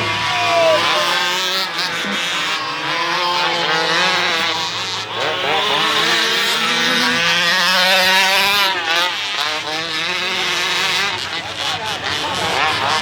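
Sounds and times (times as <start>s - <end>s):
small engine revving: 0.0s - 13.0s.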